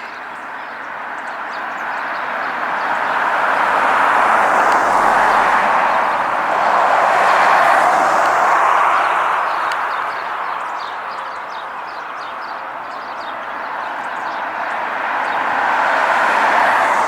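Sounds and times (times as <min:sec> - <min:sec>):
vehicle tyre noise: 0:02.3 - 0:12.8, 0:14.5 - 0:17.0.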